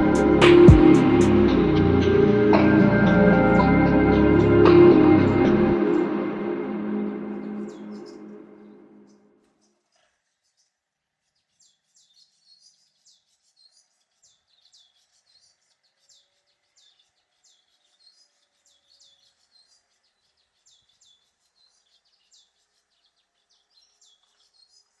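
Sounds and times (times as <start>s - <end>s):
small bird chirping: 7.6s - 25.0s.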